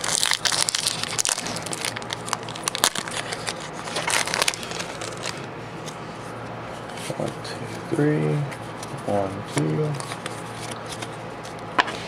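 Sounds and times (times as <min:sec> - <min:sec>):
foil wrapper crinkling: 0:00.0 - 0:05.5.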